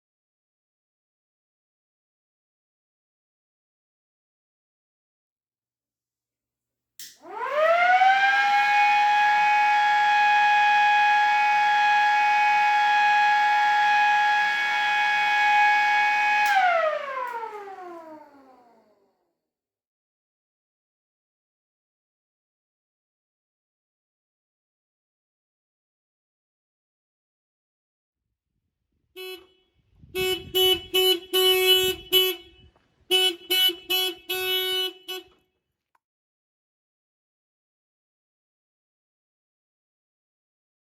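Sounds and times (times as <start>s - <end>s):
switch click: 7.0s - 7.2s
motor-driven siren wailing: 7.2s - 19.1s.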